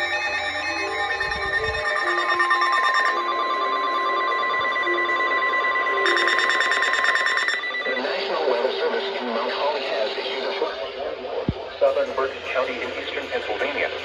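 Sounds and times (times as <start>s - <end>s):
harsh digital data buzzing: 0.0s - 8.0s
high warning alarm tone: 0.0s - 9.2s.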